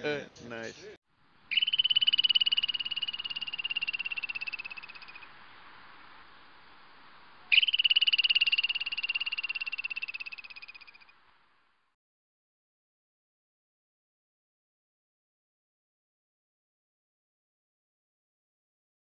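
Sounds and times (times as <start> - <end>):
frog trilling: 1.5 - 5.4, 7.4 - 11.1.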